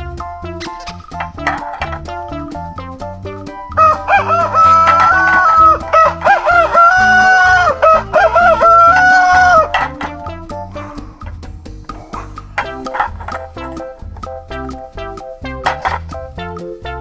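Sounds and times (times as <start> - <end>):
music beat: 0.0 - 17.0
plucked bass line: 0.0 - 17.0
clucking and crowing synth lead: 3.8 - 10.9, 12.5 - 14.0, 15.6 - 16.1.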